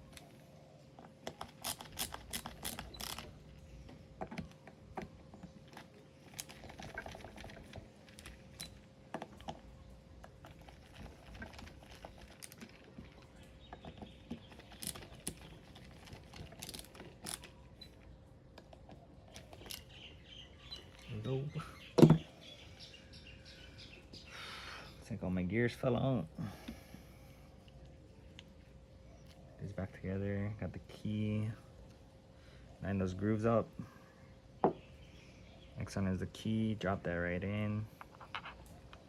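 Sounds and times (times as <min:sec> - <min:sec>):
metal reel parts clicking: 0:01.0 - 0:03.6, 0:05.6 - 0:09.6, 0:10.2 - 0:18.1, 0:19.3 - 0:20.0.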